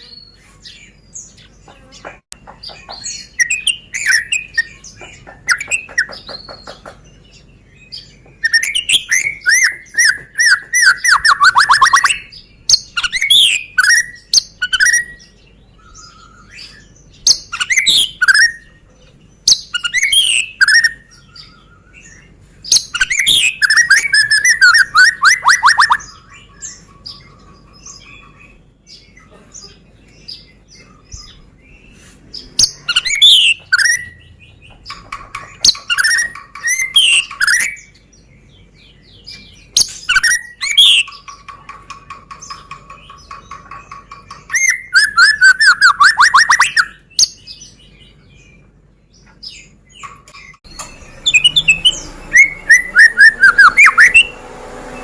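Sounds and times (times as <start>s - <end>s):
bird singing whistled phrases: 8.4s - 15.2s, 19.5s - 22.1s, 22.8s - 26.6s, 32.6s - 34.2s, 35.6s - 37.9s, 39.8s - 41.1s, 44.5s - 47.4s, 51.2s - 54.4s.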